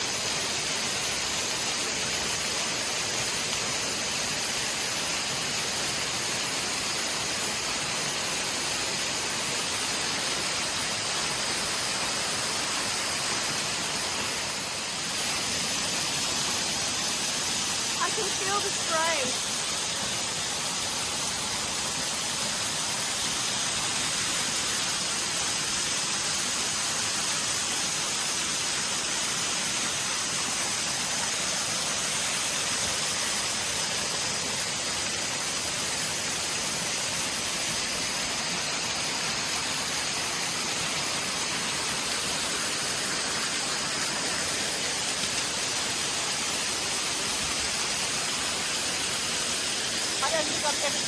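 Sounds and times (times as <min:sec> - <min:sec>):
waterfall rushing: 0:00.0 - 0:51.0.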